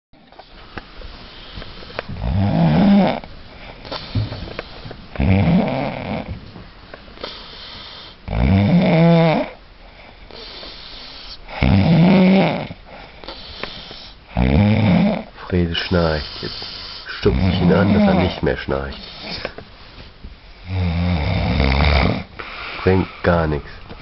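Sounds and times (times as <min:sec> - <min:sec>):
man snoring loudly: 0:02.2 - 0:03.2, 0:05.2 - 0:06.3, 0:08.3 - 0:09.6, 0:11.6 - 0:12.8, 0:14.4 - 0:15.3, 0:17.2 - 0:18.4, 0:20.7 - 0:22.3
breathing: 0:09.8 - 0:11.4, 0:12.9 - 0:14.2, 0:16.2 - 0:17.2, 0:19.0 - 0:19.6, 0:22.4 - 0:23.3.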